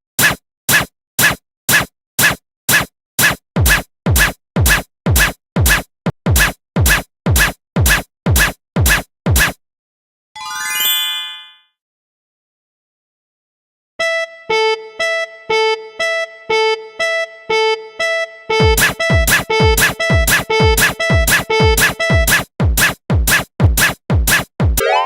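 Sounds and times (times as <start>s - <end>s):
bright chime-like tones: 10.4s - 11.7s.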